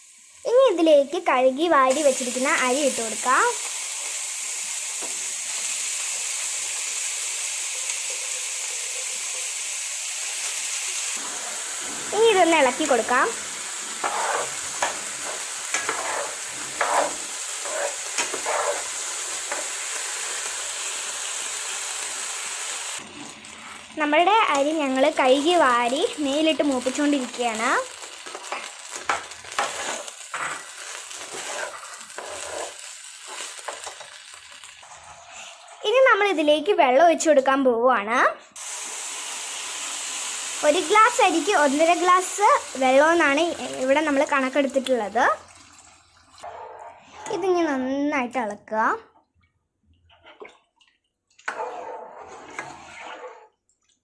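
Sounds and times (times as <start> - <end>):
onions and rice sizzling in pot: 0.0 - 37.4, 38.6 - 46.5
spoon scraping through rice: 14.0 - 19.0, 29.5 - 30.6, 31.2 - 33.4.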